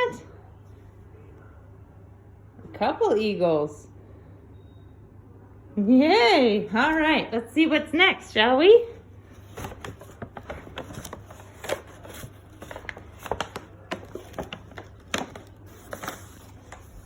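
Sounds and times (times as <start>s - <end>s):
gift wrapping rustling and crinkling: 9.1s - 17.0s.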